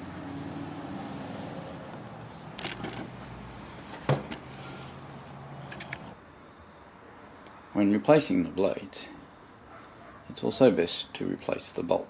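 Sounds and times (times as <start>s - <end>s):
metal mower blades clinking: 2.5s - 3.2s.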